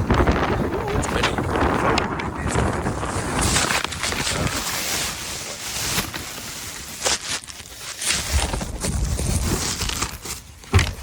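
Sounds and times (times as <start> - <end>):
wind buffeting microphone: 0.0 - 4.6.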